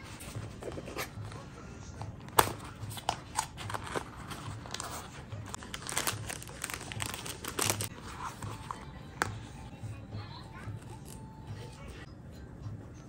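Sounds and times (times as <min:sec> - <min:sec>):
packaging crinkling: 0:02.4 - 0:07.9.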